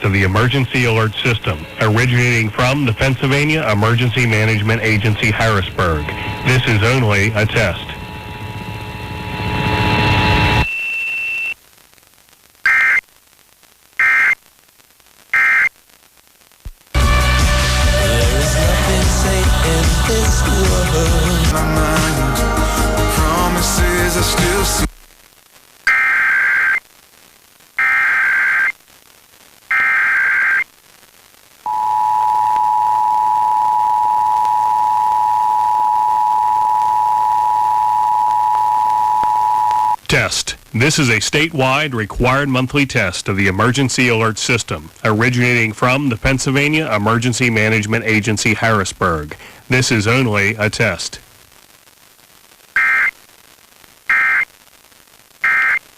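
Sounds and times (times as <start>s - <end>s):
data burst tones: 0.0s - 11.6s, 12.6s - 13.0s, 14.0s - 14.4s, 15.3s - 15.8s, 25.9s - 26.8s, 27.8s - 28.8s, 29.7s - 30.7s, 52.7s - 53.2s, 54.1s - 54.6s, 55.4s - 55.9s
radio hiss: 0.0s - 55.9s
two-tone digital data bursts: 12.6s - 13.0s, 15.3s - 15.7s, 25.9s - 26.8s, 27.8s - 28.8s, 29.7s - 30.7s, 52.8s - 53.2s, 54.1s - 54.5s, 55.4s - 55.8s
faint steady tone: 31.7s - 40.0s.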